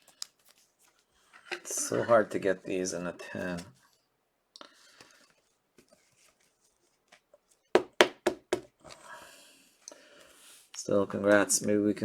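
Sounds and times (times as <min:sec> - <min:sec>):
rustling of cards: 0:00.0 - 0:01.5, 0:04.8 - 0:07.7
quick sharp taps: 0:07.8 - 0:08.7.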